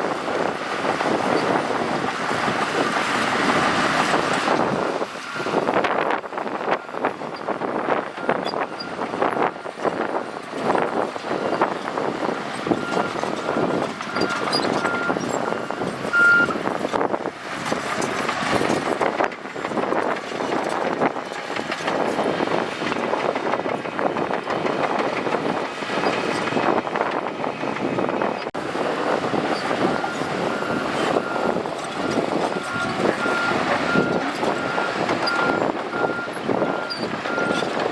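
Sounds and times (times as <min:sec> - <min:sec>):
bulldozer diesel engine working: 0:00.0 - 0:37.9
machinery clatter: 0:10.4 - 0:27.9
reversing alarm beeping: 0:12.7 - 0:16.6, 0:29.8 - 0:37.7.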